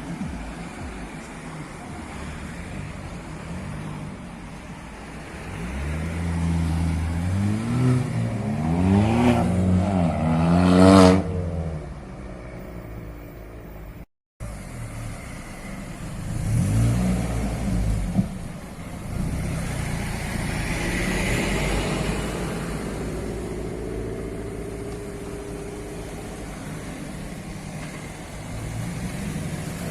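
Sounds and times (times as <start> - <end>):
car engine revving: 3.6 - 11.9, 14.5 - 29.9.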